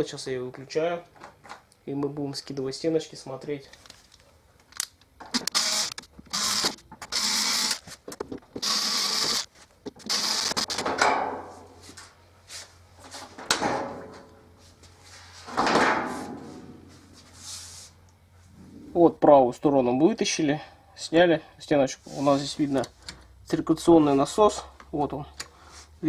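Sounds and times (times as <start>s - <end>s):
cordless screwdriver whirring: 5.4s - 7.8s, 8.6s - 10.8s
metal panel rattling: 10.8s - 11.5s, 13.4s - 14.3s, 15.5s - 16.8s.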